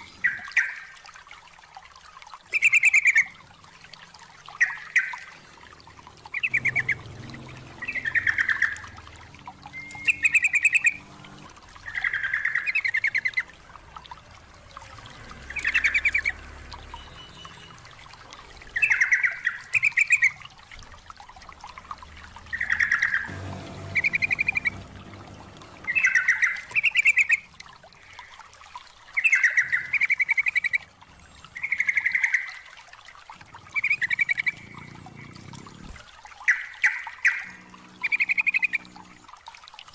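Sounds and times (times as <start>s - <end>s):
bulbul singing: 4.5s - 13.6s, 15.5s - 20.6s, 21.7s - 28.2s.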